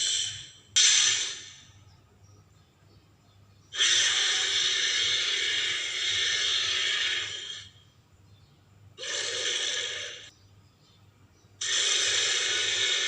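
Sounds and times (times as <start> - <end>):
dinosaur snorting: 3.8 - 7.7, 9.0 - 10.3, 11.6 - 13.0.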